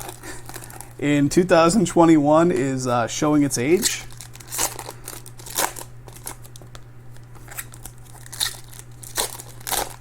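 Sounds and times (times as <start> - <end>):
foil wrappers crinkling: 0.0 - 1.0, 3.6 - 10.0.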